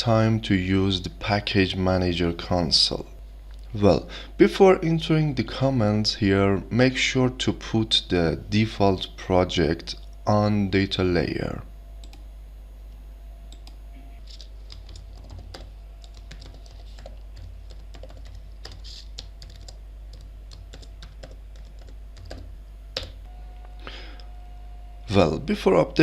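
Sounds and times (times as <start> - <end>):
low electrical hum: 0.0 - 26.0
keyboard typing: 13.5 - 23.2.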